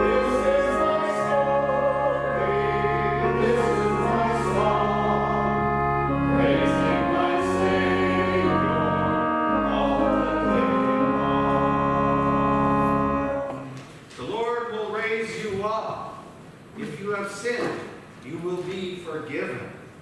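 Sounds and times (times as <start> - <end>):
choir singing a hymn: 0.0 - 13.5
instrumental accompaniment: 0.0 - 14.0.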